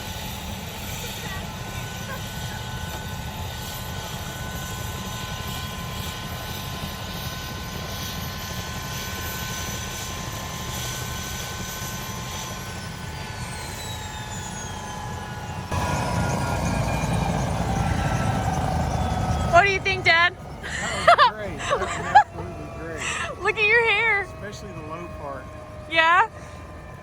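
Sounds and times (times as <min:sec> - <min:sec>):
helicopter turbine whine: 0:00.0 - 0:27.0
low rotor rumble: 0:15.3 - 0:27.0.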